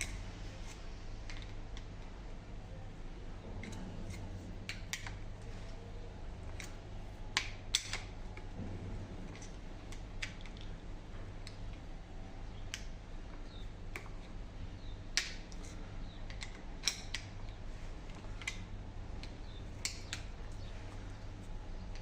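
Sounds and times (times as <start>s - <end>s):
steady low hum: 0.0s - 22.0s
metal clicks of tools and parts: 15.2s - 17.3s.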